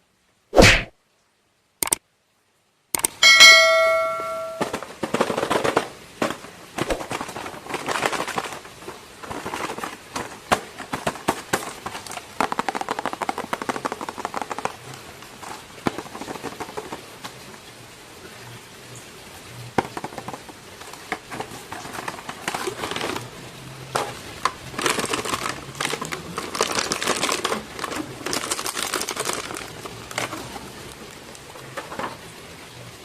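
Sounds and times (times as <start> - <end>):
bell-like ding: 3.2 - 4.7
plastic packaging crackling: 4.6 - 17.6, 19.8 - 32.2.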